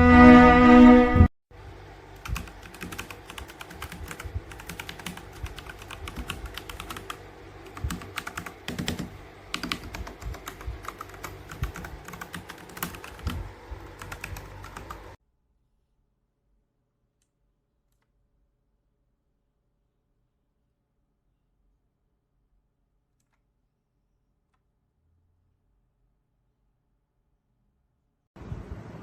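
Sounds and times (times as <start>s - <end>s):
fast typing on mechanical keyboard: 2.2s - 15.2s.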